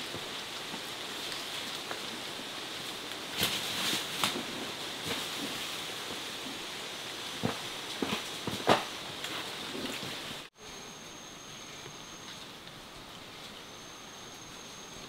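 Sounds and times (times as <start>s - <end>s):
steady rain: 0.0s - 15.0s
knocks and rustles: 7.3s - 10.4s.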